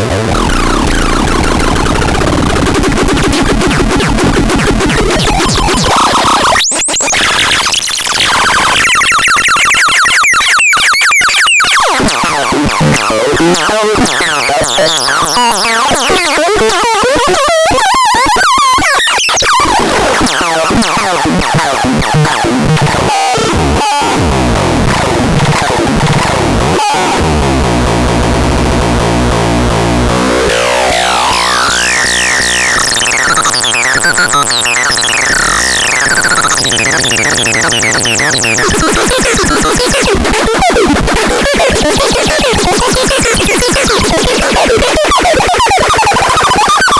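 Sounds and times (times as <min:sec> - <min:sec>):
harsh synthesizer tones: 0:00.0 - 0:46.9
tones gliding upward: 0:30.3 - 0:40.0.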